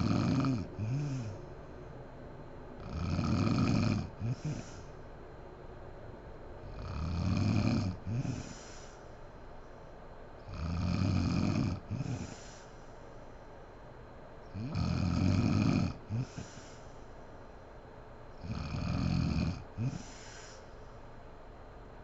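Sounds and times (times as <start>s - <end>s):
woman snoring loudly: 0.0s - 1.4s, 2.8s - 4.8s, 6.7s - 8.7s, 10.5s - 12.5s, 14.6s - 16.6s, 18.4s - 20.2s.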